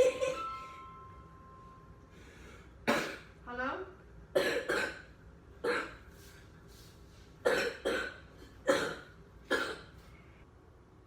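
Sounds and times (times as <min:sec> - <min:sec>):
man coughing hard: 0:02.8 - 0:03.3, 0:04.4 - 0:06.0, 0:07.4 - 0:09.9.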